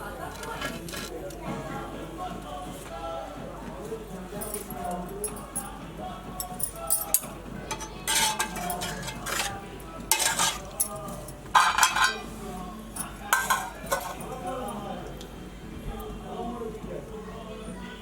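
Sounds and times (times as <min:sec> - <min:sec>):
metal utensils scraping a pot: 0:00.3 - 0:01.2, 0:07.0 - 0:12.4, 0:13.0 - 0:14.6.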